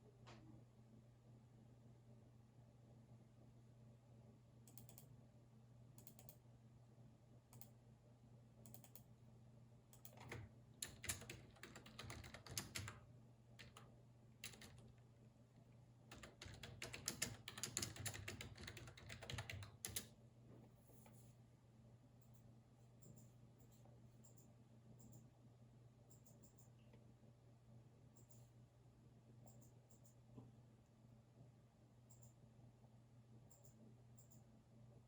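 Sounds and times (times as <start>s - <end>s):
keyboard typing: 8.7s - 9.1s, 10.0s - 15.0s, 16.1s - 20.1s.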